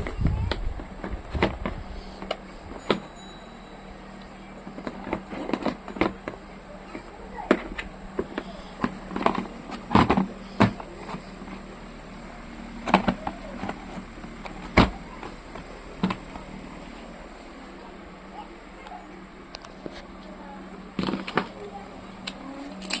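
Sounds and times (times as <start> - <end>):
objects clicking and knocking: 4.6 - 11.6.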